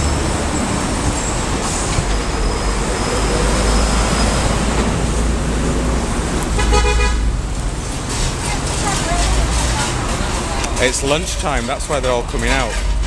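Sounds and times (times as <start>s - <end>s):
passing traffic rumble: 0.0s - 13.0s
vehicle horn toot: 6.6s - 7.2s.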